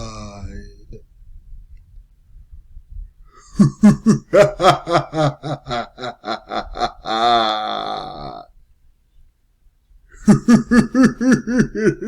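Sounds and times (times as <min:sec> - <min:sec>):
deep evil laugh: 0:03.4 - 0:08.5, 0:10.2 - 0:12.0.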